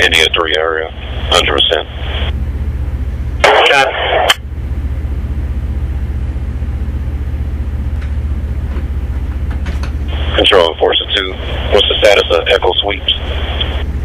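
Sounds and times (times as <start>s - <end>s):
two-way radio voice: 0.0s - 2.3s, 3.4s - 4.4s, 10.1s - 13.8s
pulsing mechanical drone: 0.0s - 14.0s.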